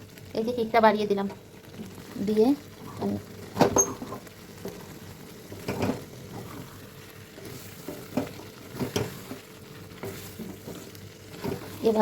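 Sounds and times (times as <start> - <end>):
chicken sizzling in a pan: 0.0 - 12.0
utensil scraping a pan: 5.6 - 12.0.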